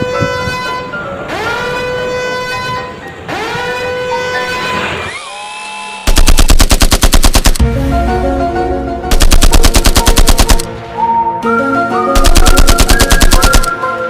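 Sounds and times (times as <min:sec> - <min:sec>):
multi-tone vehicle horn melody: 0:00.0 - 0:05.1.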